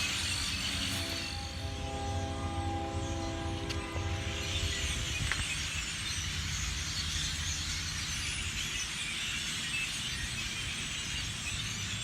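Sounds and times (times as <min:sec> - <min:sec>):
flock of birds chattering: 0:00.0 - 0:12.0
pitched hum: 0:01.0 - 0:05.5.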